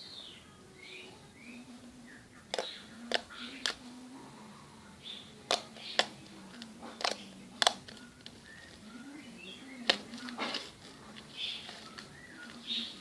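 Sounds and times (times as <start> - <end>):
slime popping and clicking: 7.0 - 8.0.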